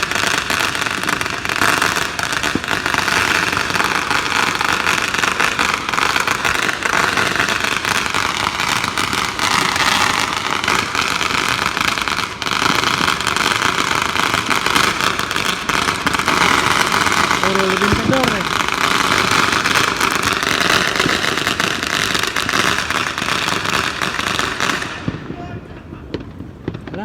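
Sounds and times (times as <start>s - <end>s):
firecrackers cracking and banging: 0.0s - 27.0s.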